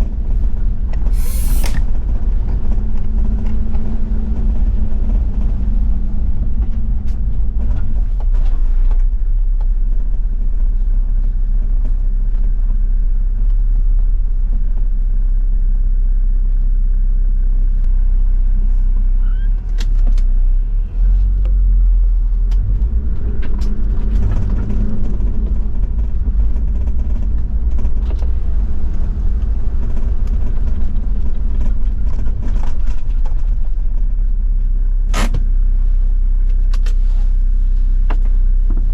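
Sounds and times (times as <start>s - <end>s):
diesel engine driving: 0.0s - 38.9s
gravel clicks and body creaks: 21.0s - 35.3s.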